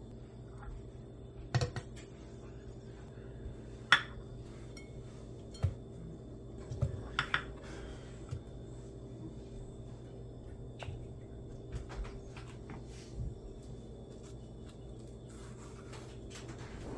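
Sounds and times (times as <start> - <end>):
kitchenware knocks and clinks: 3.9 - 6.0, 6.6 - 8.4.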